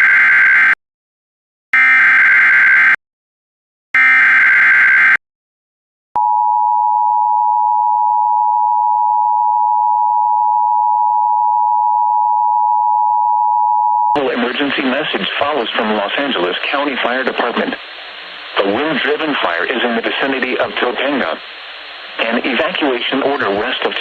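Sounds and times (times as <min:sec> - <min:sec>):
steady two-tone beep: 0:06.2 - 0:14.2.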